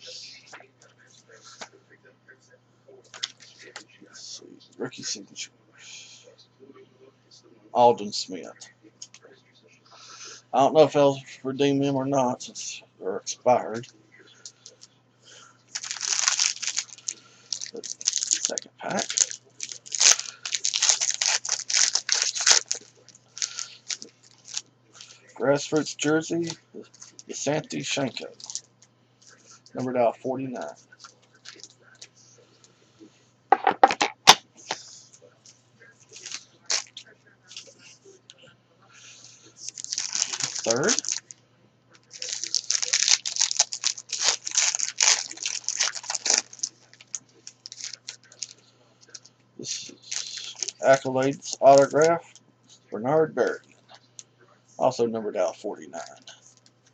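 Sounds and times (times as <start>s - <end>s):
card pack wrapper tearing and crinkling: 15.7s - 24.6s, 28.3s - 28.6s, 36.1s - 36.9s, 39.6s - 41.3s, 42.1s - 52.1s.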